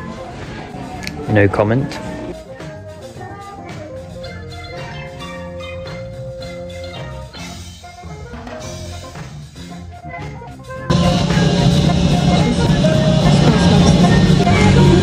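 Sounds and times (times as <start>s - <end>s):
background music with a beat: 0.0s - 15.0s
heavy bass: 10.6s - 15.0s.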